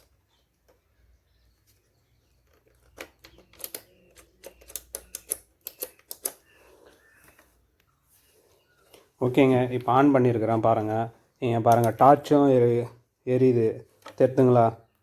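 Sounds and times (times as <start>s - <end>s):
plastic clicks and taps: 11.7s - 12.0s.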